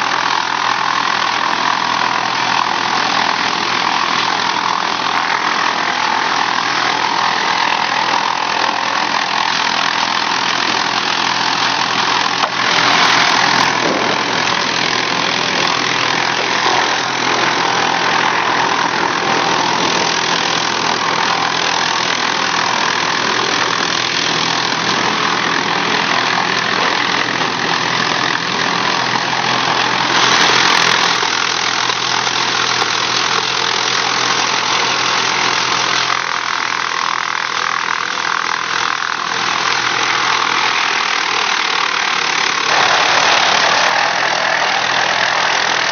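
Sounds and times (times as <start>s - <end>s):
wood chipper grinding: 0.0s - 45.9s.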